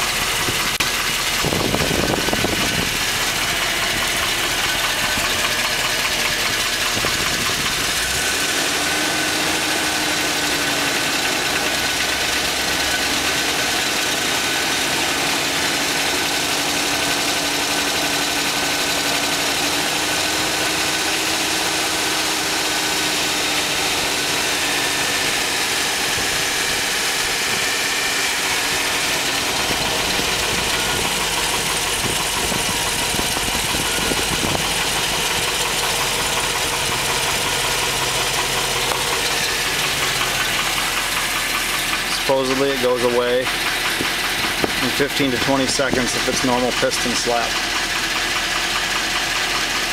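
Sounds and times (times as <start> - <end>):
engine idling with rapid knock: 0.0 - 49.9.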